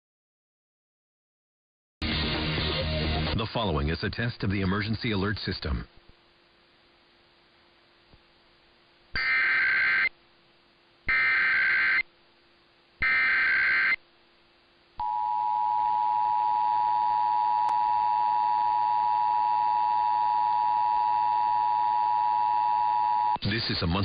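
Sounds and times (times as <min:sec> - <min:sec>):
harsh digital data bursts: 0:09.2 - 0:10.1, 0:11.1 - 0:12.0, 0:13.0 - 0:14.0.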